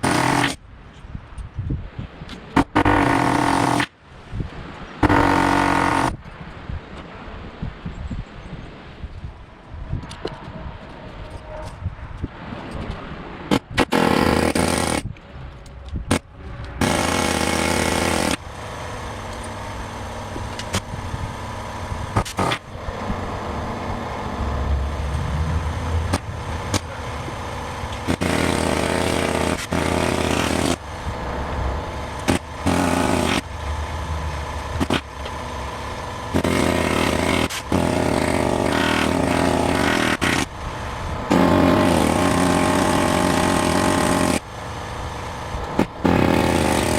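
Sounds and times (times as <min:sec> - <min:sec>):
pneumatic air hammer chiselling steel: 0:00.0 - 0:00.6, 0:02.6 - 0:03.9, 0:05.0 - 0:06.2, 0:13.5 - 0:15.2, 0:16.1 - 0:22.8, 0:25.8 - 0:31.2, 0:31.9 - 0:46.9
steady low hum: 0:14.0 - 0:46.9.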